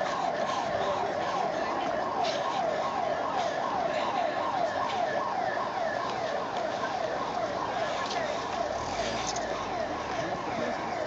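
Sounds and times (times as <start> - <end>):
siren falling tones: 4.5 - 11.0.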